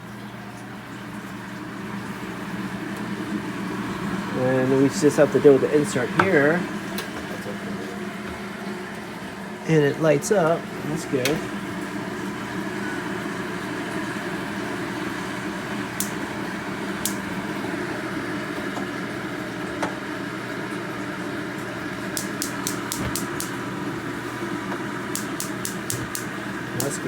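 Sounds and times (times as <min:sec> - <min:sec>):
steady mechanical hum: 0:00.0 - 0:27.0
stove igniter clicking: 0:15.8 - 0:17.4, 0:22.1 - 0:24.0, 0:24.7 - 0:27.0.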